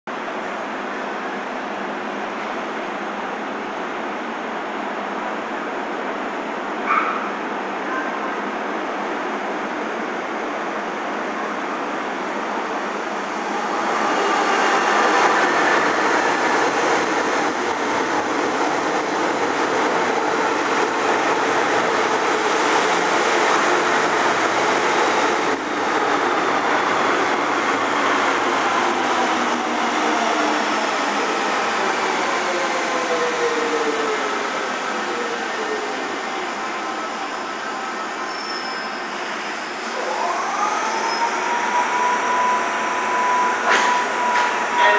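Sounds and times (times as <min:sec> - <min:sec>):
train braking into station: 0:00.2 - 0:44.9
wheel squeal: 0:38.2 - 0:39.1.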